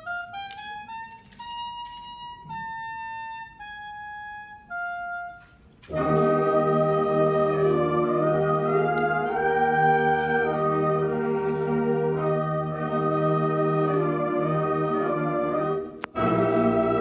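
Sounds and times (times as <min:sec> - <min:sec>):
solo wind instrument melody: 0:00.0 - 0:17.0
brass band playing: 0:04.7 - 0:17.0.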